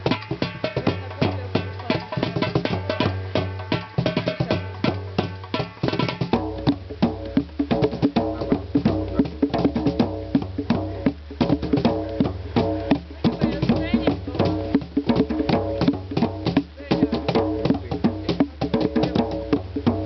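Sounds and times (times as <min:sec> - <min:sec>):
fast hand-drum percussion: 0:00.0 - 0:20.0
low bass line: 0:06.4 - 0:20.0.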